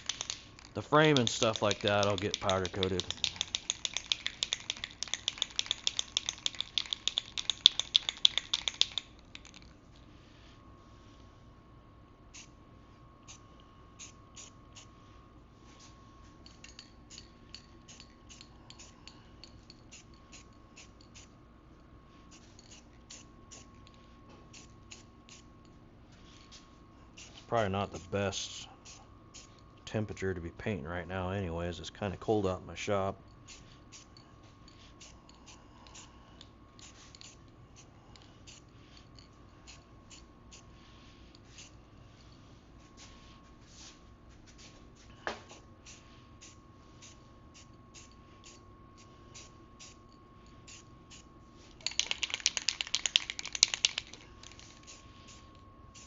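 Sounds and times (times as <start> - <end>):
spray paint can hissing: 0.0 - 9.6, 51.8 - 56.0
small hard objects clicking: 0.0 - 9.7, 51.8 - 54.9
faint steady hum: 0.0 - 56.0.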